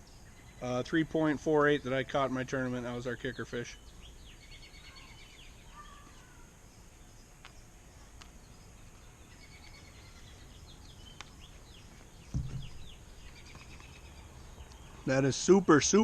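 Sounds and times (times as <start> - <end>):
songbirds chirping: 0.0 - 16.0
low thump: 12.3 - 13.0.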